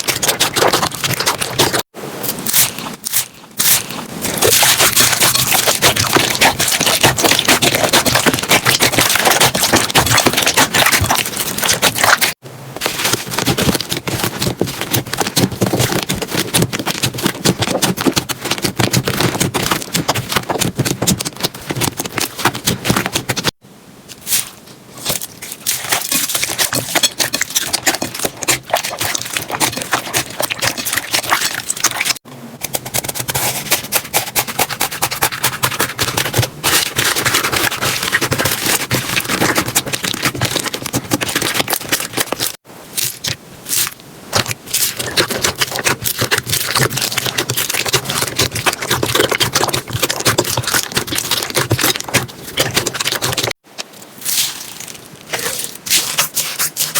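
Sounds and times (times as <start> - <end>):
slime crackling and popping: 0.0 - 23.5, 34.3 - 53.6.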